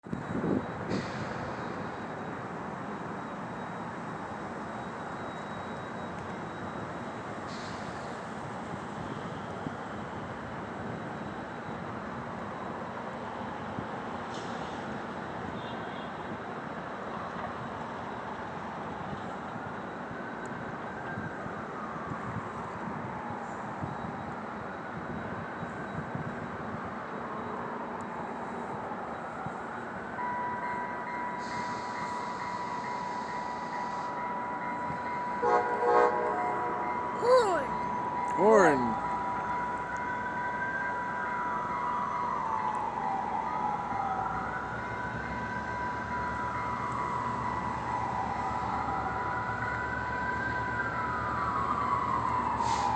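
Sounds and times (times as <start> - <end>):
steady high tone: 37.2 - 37.8, 38.4 - 39.0.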